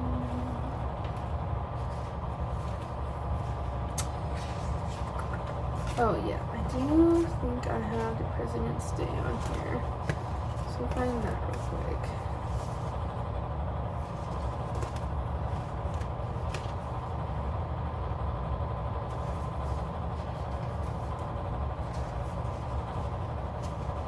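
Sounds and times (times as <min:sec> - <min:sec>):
low mechanical hum: 0:00.0 - 0:24.0
sticker sheets rustling: 0:01.1 - 0:13.0.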